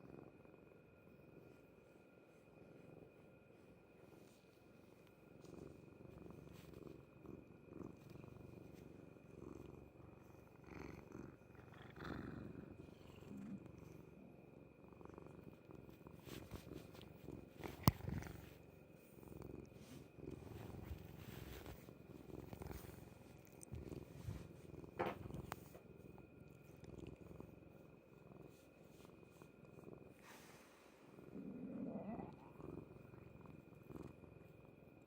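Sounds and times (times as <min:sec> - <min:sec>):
cat purring: 0:00.0 - 0:35.0
stomach gurgle: 0:31.3 - 0:34.1.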